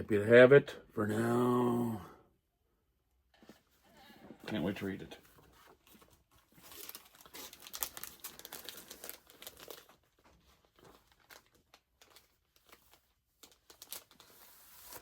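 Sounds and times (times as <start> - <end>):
comic books crinkling: 4.5 - 15.0.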